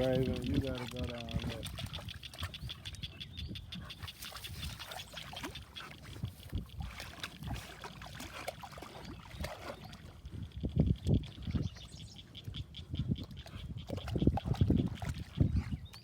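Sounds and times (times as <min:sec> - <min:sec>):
water splashing and lapping: 0:00.0 - 0:16.0
wind buffeting microphone: 0:00.0 - 0:16.0.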